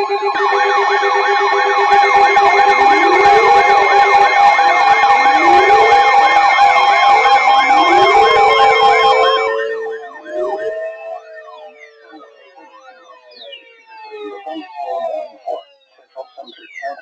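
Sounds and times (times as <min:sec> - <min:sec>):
electronic siren wail: 0:00.0 - 0:17.0
electronic siren yelp: 0:00.0 - 0:17.0
two-tone alert tone: 0:01.2 - 0:12.6.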